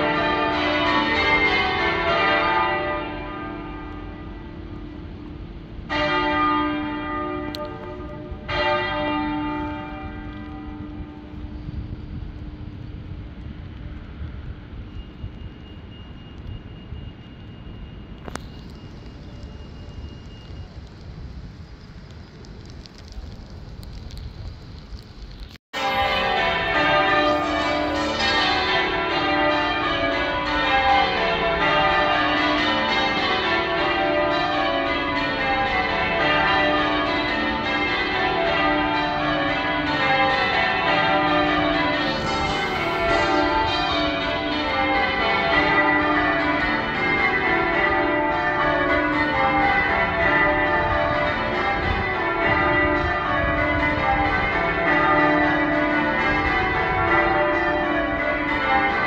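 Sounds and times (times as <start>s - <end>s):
church bells change ringing: 0.0s - 11.8s, 25.8s - 59.0s.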